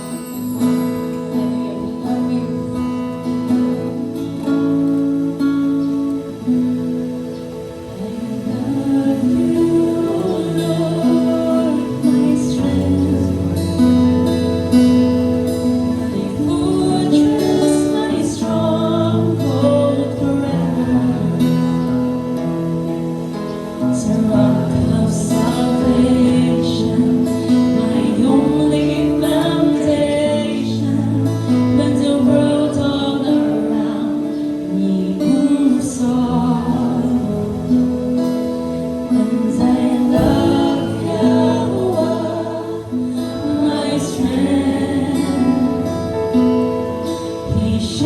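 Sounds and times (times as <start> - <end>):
acoustic guitar: 0.0 - 48.0
person singing worship song: 7.8 - 14.3, 15.9 - 22.2, 23.8 - 38.0, 39.1 - 48.0.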